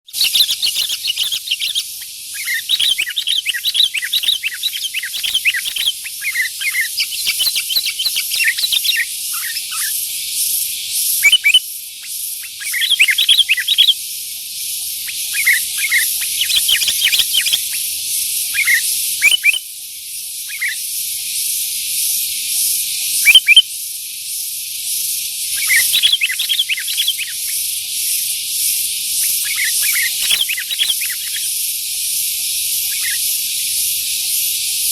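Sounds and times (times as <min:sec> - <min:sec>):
bird chirping and whistling: 0:00.1 - 0:10.0, 0:11.2 - 0:14.0, 0:15.0 - 0:17.8, 0:18.5 - 0:19.6, 0:20.5 - 0:20.8, 0:23.2 - 0:23.7, 0:25.6 - 0:27.6, 0:29.2 - 0:31.6, 0:32.8 - 0:33.3
steady high hiss: 0:00.1 - 0:34.9.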